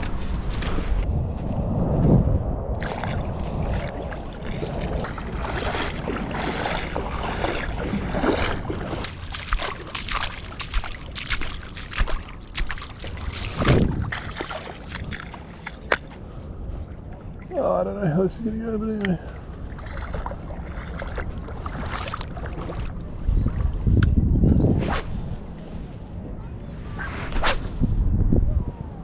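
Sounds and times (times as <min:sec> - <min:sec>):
water sloshing and splashing: 0:02.7 - 0:17.6, 0:19.0 - 0:23.9.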